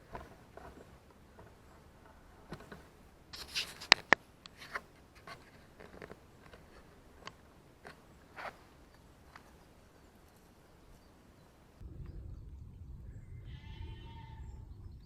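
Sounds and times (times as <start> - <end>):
rustling and scraping: 0.0 - 11.7.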